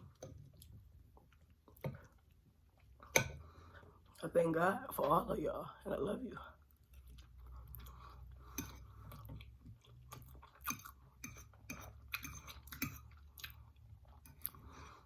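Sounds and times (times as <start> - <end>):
person chewing food: 0.0 - 4.2, 6.6 - 15.0.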